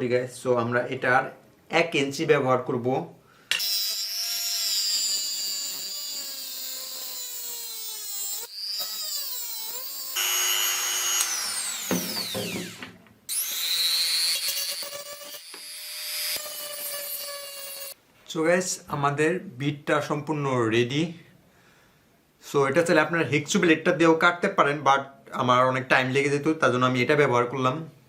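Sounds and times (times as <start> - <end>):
rotary tool cutting steel: 3.6 - 18.0.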